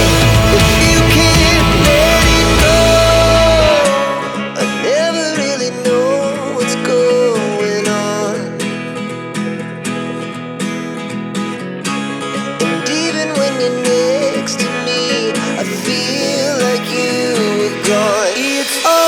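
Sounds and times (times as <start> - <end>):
bass: 0.0 - 4.0
person singing: 0.0 - 8.6, 12.6 - 19.0
acoustic guitar: 0.0 - 19.0.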